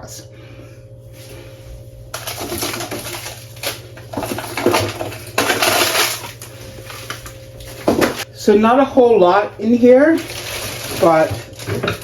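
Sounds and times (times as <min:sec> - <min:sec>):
plastic packaging rustling: 0:02.1 - 0:08.3, 0:09.7 - 0:12.0.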